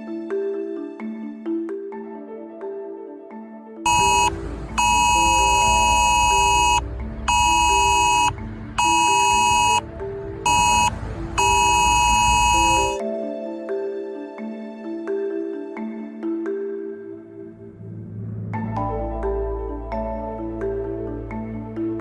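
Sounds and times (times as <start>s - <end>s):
soft mallet percussion music: 0.0s - 17.9s, 18.6s - 22.0s
harsh two-pitch alert beep: 3.9s - 9.8s, 10.5s - 13.0s.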